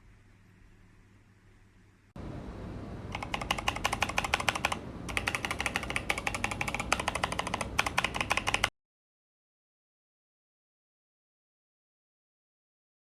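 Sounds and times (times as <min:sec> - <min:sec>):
mechanical keyboard typing: 0:03.1 - 0:08.7.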